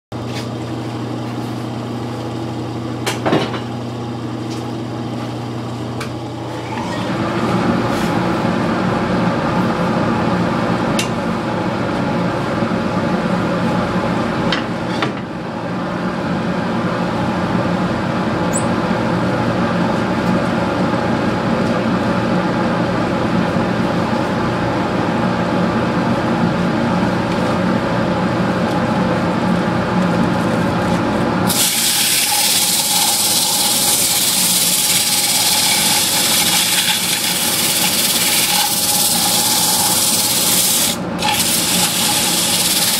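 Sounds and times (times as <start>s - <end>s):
brief high squeak: 6.5s - 7.2s, 18.5s - 18.8s
lathe humming: 31.5s - 42.9s.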